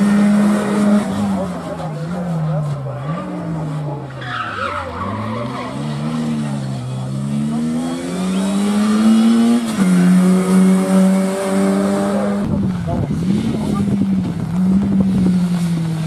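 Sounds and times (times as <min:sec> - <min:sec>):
rally car engine revving: 0:00.0 - 0:16.0
tyre squeal: 0:04.1 - 0:06.9.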